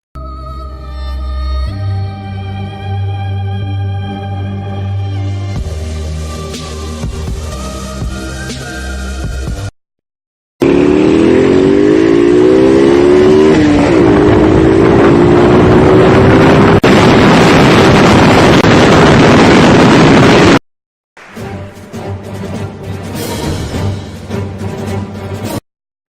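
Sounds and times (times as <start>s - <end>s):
distorted engine revving: 10.6s - 20.6s
heavy noise: 10.6s - 20.6s.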